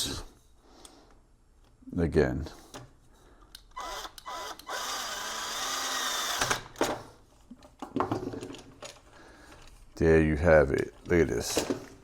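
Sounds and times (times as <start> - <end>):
cordless drill driving screw: 3.8 - 6.8.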